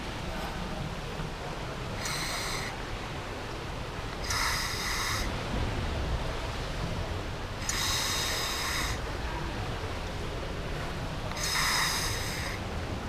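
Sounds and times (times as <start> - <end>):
scuba regulator buzzing and clicking: 2.0 - 2.7, 4.1 - 5.2, 7.6 - 9.0, 11.3 - 12.6.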